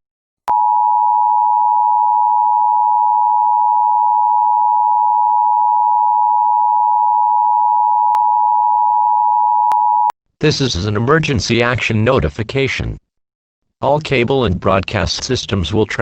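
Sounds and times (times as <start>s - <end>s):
two-tone alarm: 0.5s - 10.1s.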